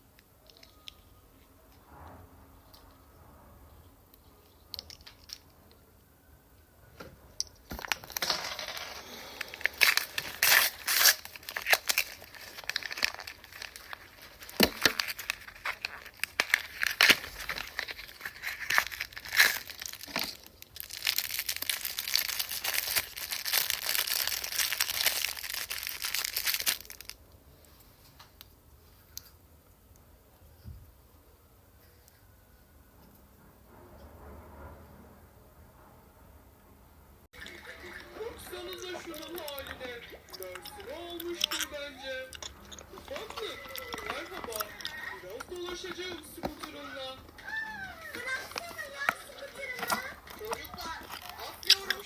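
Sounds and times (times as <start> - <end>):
wrapping being torn and crinkled: 7.7 - 27.2, 37.4 - 52.0.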